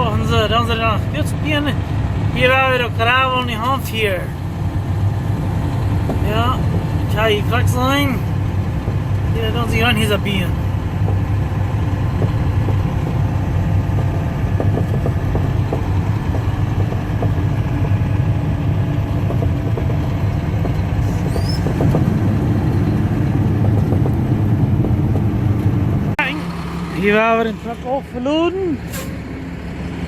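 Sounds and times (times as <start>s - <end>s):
diesel engine rumbling: 0.0s - 30.0s.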